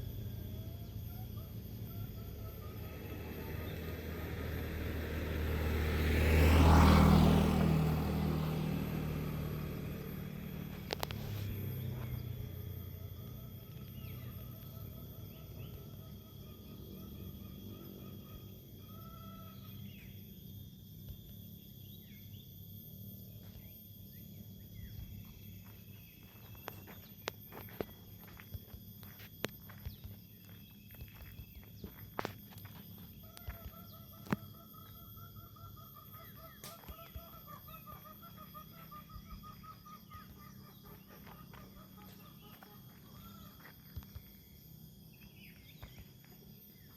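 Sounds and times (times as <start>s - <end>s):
vehicle engine passing by: 0.0s - 20.5s.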